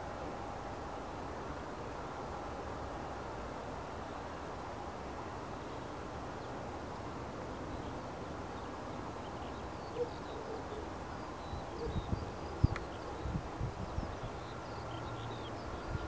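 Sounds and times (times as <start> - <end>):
faint high bird chirps: 7.7 - 16.0.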